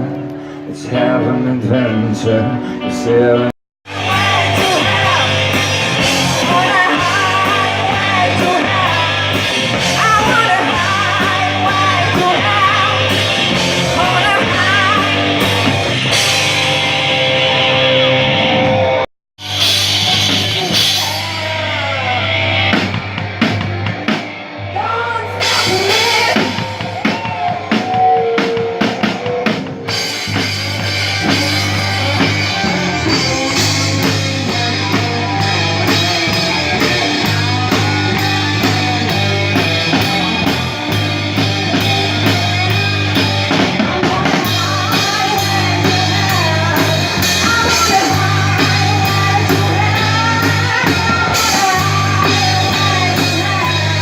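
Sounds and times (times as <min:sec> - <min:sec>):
music with drum beat: 0:03.9 - 0:18.8, 0:19.4 - 0:24.5, 0:25.4 - 0:54.0.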